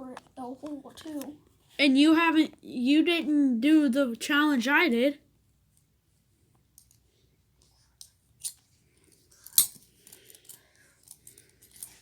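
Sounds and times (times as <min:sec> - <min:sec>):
metal handcuffs clicking and clinking: 0:08.4 - 0:08.6, 0:09.3 - 0:12.0.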